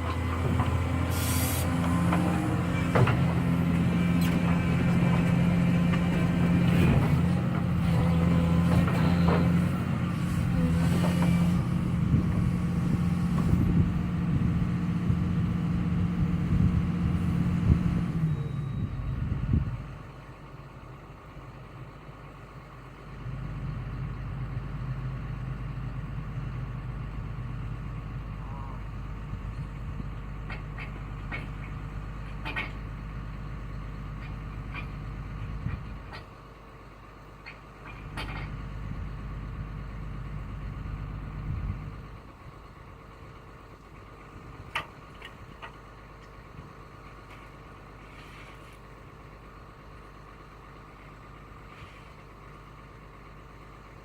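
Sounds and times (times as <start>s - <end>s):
excavator diesel engine: 0.0s - 54.0s
low engine hum: 0.0s - 54.0s
clanks and knocks: 2.1s - 9.7s, 30.5s - 32.9s, 37.4s - 38.6s.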